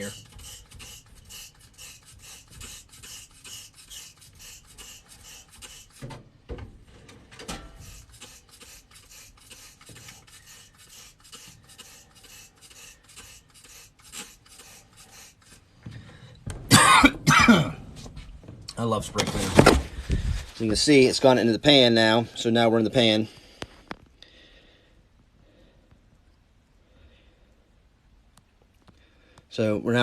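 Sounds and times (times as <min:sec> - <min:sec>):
trigger sprayer squirting liquid: 0:00.0 - 0:06.1, 0:07.8 - 0:15.6.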